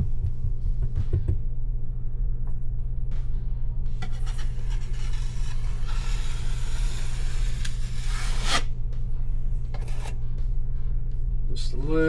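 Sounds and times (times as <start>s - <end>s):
tape rubbing scrape on wet seam: 4.0s - 8.7s, 9.8s - 10.2s.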